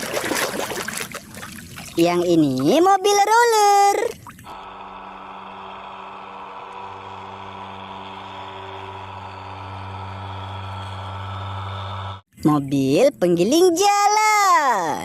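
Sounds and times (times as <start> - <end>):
road roller engine humming: 4.5 - 12.3.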